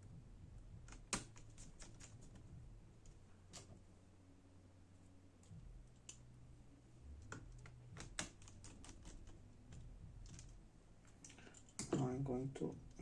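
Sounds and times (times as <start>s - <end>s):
small clicks and taps of parts: 5.4s - 6.2s, 7.2s - 12.2s.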